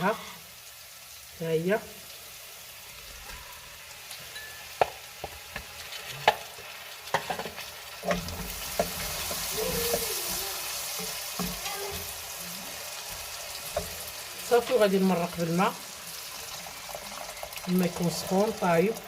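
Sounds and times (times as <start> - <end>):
onion and garlic sizzling in oil: 0.0 - 19.0
spoon knocking and scraping pot: 4.3 - 10.2, 13.1 - 14.1.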